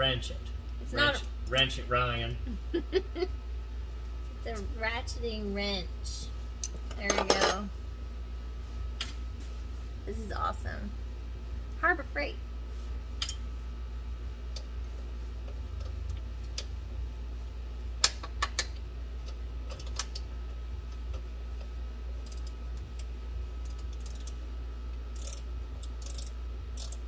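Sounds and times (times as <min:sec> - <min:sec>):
steady low hum: 0:00.0 - 0:27.0
ratcheting wrench clicking: 0:22.2 - 0:22.6, 0:23.6 - 0:24.4, 0:25.1 - 0:27.0.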